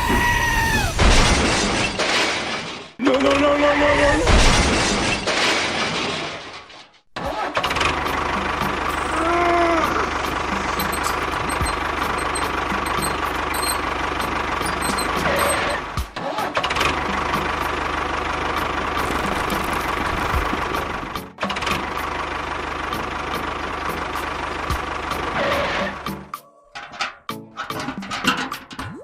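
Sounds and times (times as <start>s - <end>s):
small tractor engine droning: 7.7s - 26.1s.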